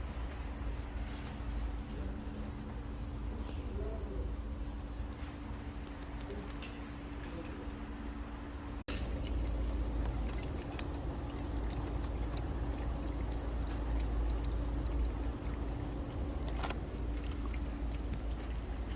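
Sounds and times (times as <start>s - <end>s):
minivan driving rumble: 8.1s - 18.9s.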